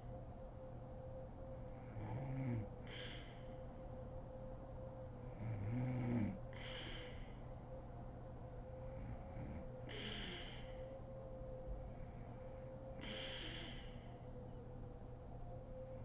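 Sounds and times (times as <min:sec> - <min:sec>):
woman snoring: 0:02.0 - 0:02.7, 0:05.4 - 0:06.4.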